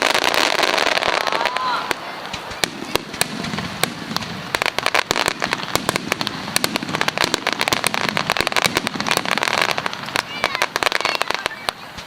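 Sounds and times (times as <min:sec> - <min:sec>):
fireworks crackling pops: 0:00.0 - 0:12.0
fireworks rumble: 0:00.0 - 0:12.0.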